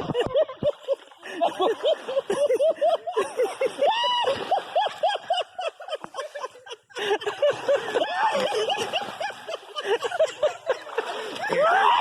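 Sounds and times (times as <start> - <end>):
people laughing hard: 0.0 - 12.0.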